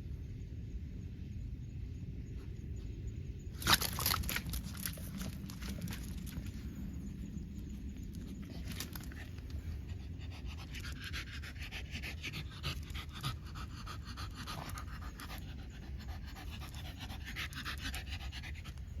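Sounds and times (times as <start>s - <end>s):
dog panting rapidly: 8.6s - 19.0s.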